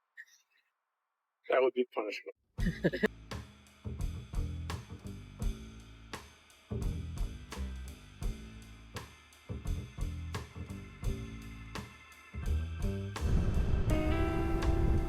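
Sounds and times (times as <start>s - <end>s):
background music with drum beat: 2.6s - 15.0s
low bass notes: 3.9s - 11.8s, 12.4s - 15.0s.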